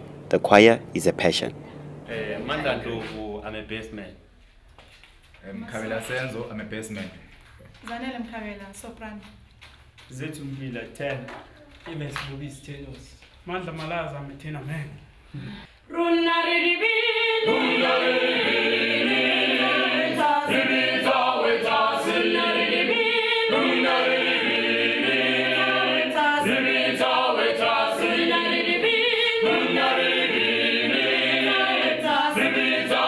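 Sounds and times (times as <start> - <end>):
mixed choir singing a cappella: 2.1 - 3.0, 15.9 - 33.0.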